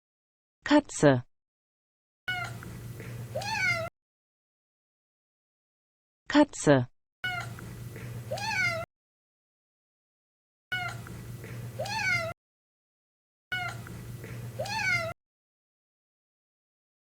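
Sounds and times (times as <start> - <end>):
cat meowing: 2.3 - 2.7, 3.3 - 3.9, 7.2 - 7.6, 8.3 - 8.8, 10.7 - 11.1, 11.8 - 12.3, 13.5 - 13.9, 14.6 - 15.2
low steady hum: 2.4 - 3.9, 7.3 - 8.8, 10.8 - 12.3, 13.6 - 15.1.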